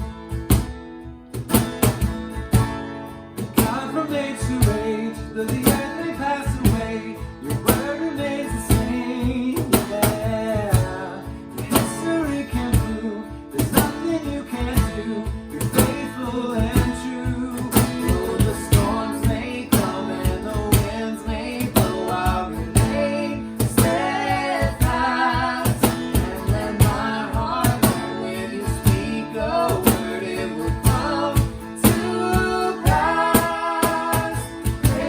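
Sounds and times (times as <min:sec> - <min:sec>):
guitar and drums playing: 0:00.0 - 0:35.0
person singing: 0:03.6 - 0:35.0.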